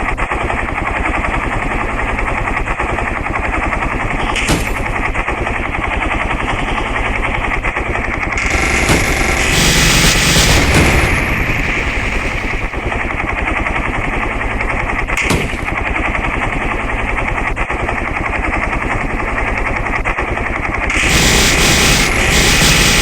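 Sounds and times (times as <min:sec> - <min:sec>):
helicopter rotor chop: 0:08.3 - 0:13.5, 0:20.9 - 0:23.0.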